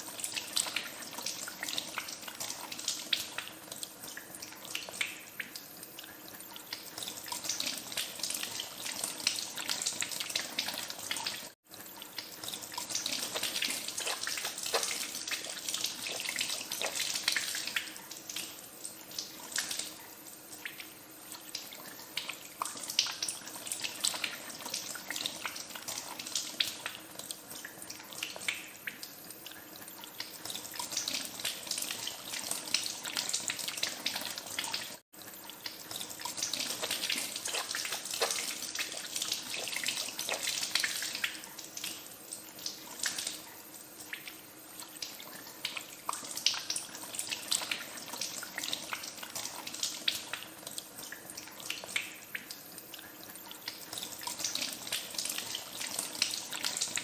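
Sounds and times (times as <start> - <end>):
hands washing under water: 12.4 - 18.5, 35.9 - 42.0.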